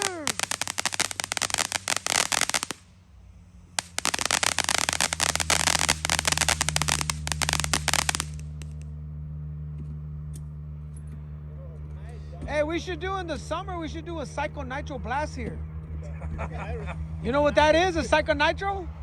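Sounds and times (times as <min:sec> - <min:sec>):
firecrackers crackling: 0:00.0 - 0:08.8
steady low hum: 0:00.0 - 0:19.0.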